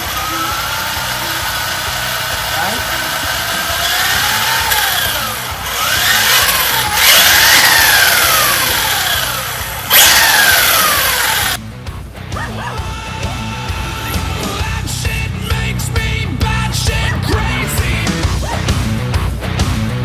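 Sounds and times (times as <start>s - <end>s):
electric motor whining: 0.0s - 11.6s, 13.2s - 14.9s.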